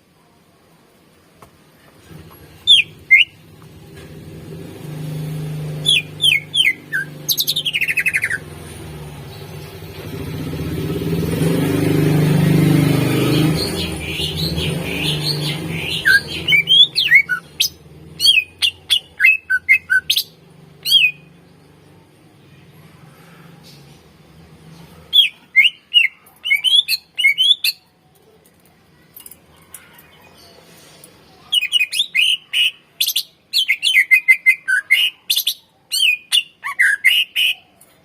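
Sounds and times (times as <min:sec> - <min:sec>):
bird singing whistles and trills: 0:02.7 - 0:03.4, 0:05.8 - 0:08.4, 0:13.6 - 0:21.3, 0:31.6 - 0:37.6.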